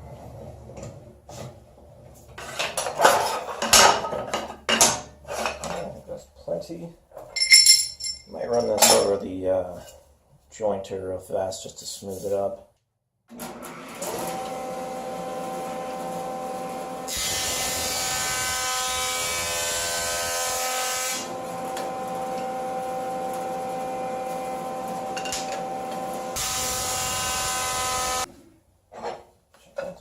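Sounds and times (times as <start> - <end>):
jointer motor whining: 13.4 - 28.3.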